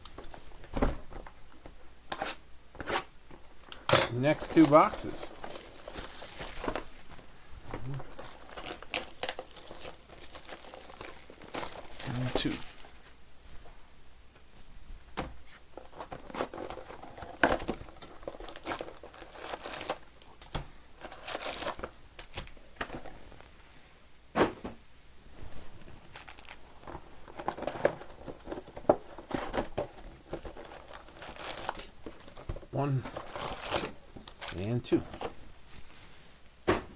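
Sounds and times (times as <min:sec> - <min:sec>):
plastic wrapping crinkling and tearing: 0:04.3 - 0:07.2, 0:07.8 - 0:13.1, 0:15.8 - 0:23.3, 0:26.0 - 0:35.4.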